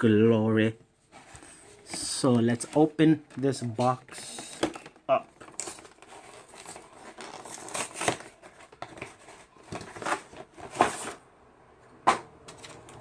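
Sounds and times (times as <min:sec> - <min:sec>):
cardboard rustling and scraping: 0:01.0 - 0:11.2.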